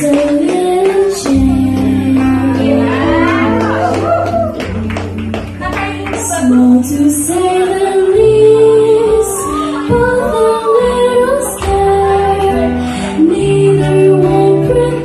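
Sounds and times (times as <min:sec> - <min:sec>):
girl singing slow melody: 0:00.0 - 0:04.6, 0:05.6 - 0:15.0
instrumental accompaniment: 0:00.0 - 0:15.0.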